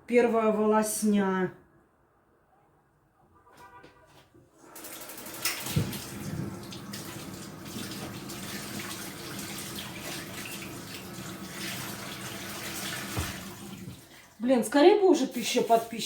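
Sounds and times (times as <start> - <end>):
tap water running into sink: 4.7 - 14.4
knock: 13.2 - 13.4.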